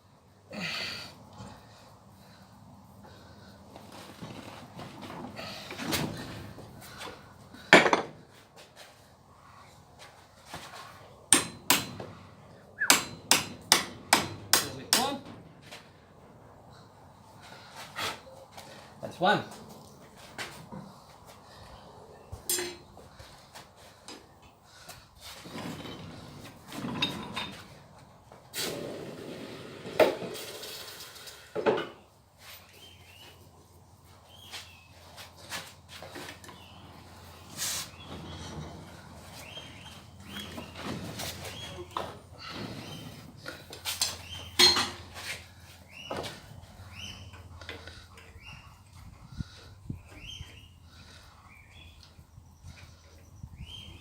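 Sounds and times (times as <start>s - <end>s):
metallic clanks of forging tools: 11.3s - 12.0s, 12.8s - 15.2s, 22.5s - 22.9s, 44.6s - 45.0s
metal clanking and scraping: 22.5s - 22.9s, 25.3s - 27.8s, 44.5s - 45.4s
birds calling: 36.5s - 43.2s, 45.8s - 48.8s.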